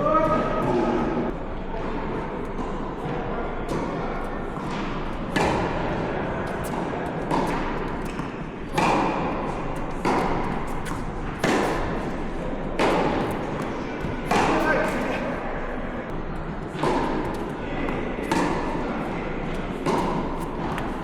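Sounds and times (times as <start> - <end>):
tennis racket striking ball: 3.7 - 15.4, 16.0 - 21.0.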